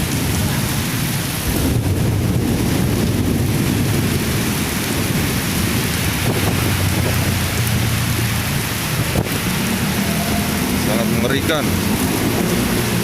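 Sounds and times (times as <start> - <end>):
wind buffeting microphone: 0.0 - 10.8
heavy rain hissing: 0.0 - 13.0.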